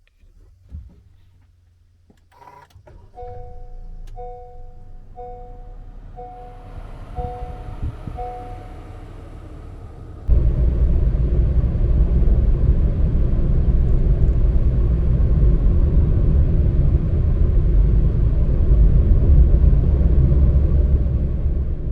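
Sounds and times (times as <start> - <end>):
vehicle rumbling on the move: 0.0 - 21.9
road and wind noise: 2.3 - 21.9.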